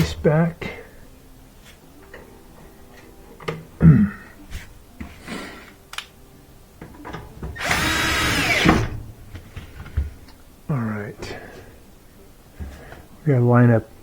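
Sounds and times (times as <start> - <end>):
power drill driving screw: 7.6 - 8.9.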